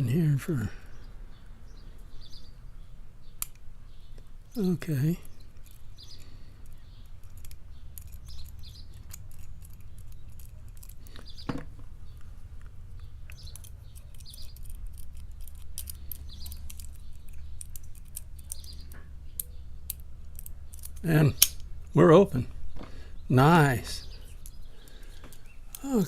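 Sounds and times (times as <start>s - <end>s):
steady low hum: 0.0s - 26.0s
lock pick clicking in padlock: 5.2s - 11.5s, 13.2s - 21.7s.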